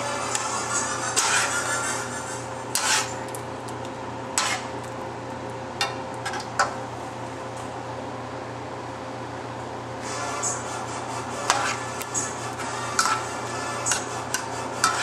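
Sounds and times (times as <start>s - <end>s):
metal spatula scraping frying pan: 0.0s - 3.2s, 4.4s - 4.8s, 10.1s - 15.0s
steady background hum: 0.0s - 15.0s.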